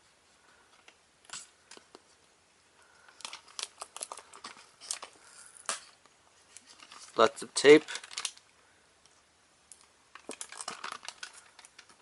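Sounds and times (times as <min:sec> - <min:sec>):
plastic packaging crinkling: 0:03.0 - 0:05.9, 0:06.5 - 0:08.5, 0:09.7 - 0:12.0.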